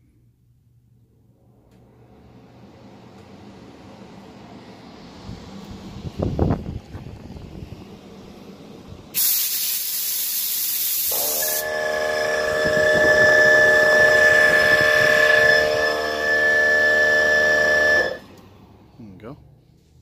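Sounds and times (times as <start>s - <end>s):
loud air hiss: 9.1s - 18.2s
compressor motor whining: 11.0s - 18.6s.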